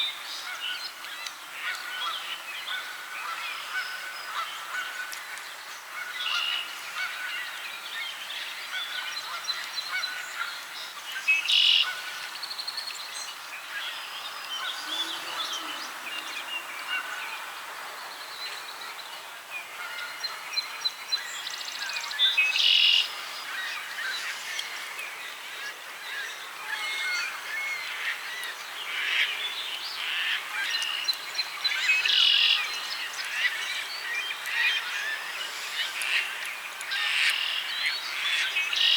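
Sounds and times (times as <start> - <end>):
geese honking: 14.6 - 17.8.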